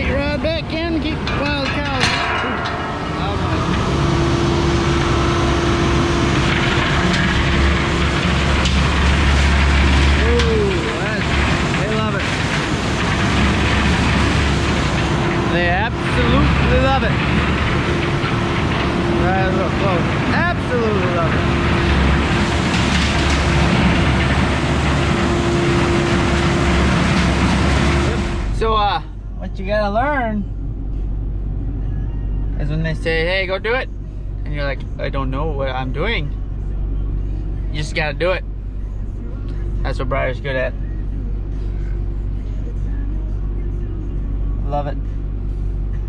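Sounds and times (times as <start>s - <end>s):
farm machinery engine drone: 0.0s - 46.0s
steady machine whine: 0.0s - 46.0s.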